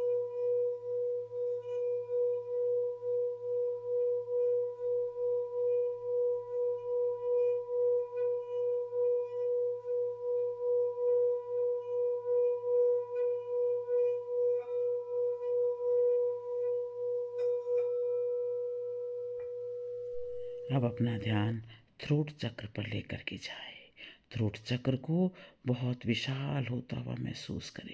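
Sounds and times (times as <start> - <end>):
singing bowl tone: 0.0 - 21.8.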